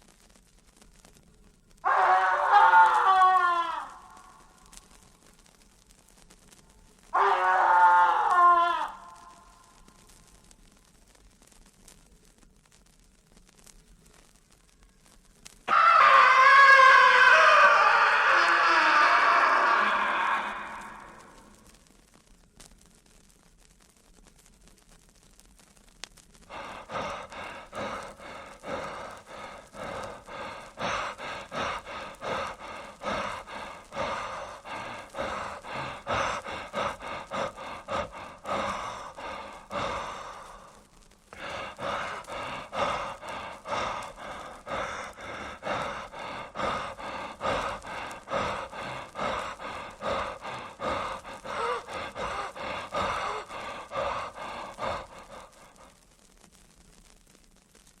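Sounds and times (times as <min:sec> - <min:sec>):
rapid gasping breaths: 0:26.5 - 0:56.6.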